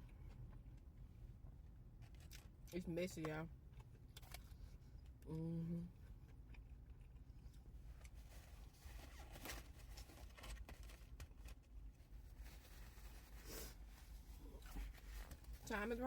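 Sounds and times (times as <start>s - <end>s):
soft clicks and rustles: 14.0s - 15.8s.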